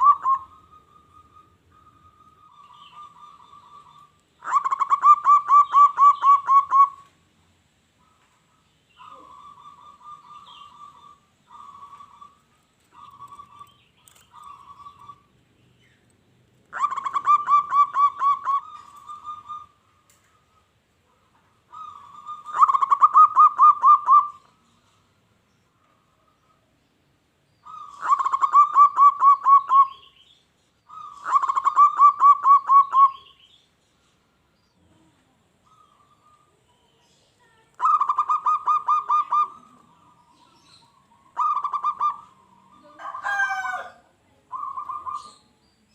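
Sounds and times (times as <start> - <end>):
dove cooing: 0.0 - 7.2, 8.0 - 15.3, 16.7 - 24.6, 27.6 - 30.1, 30.9 - 33.4, 37.8 - 45.6.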